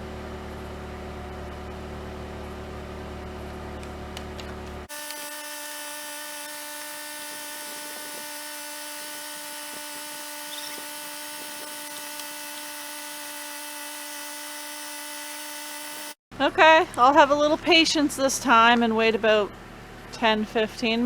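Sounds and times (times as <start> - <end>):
small electric device humming: 4.9 - 16.2.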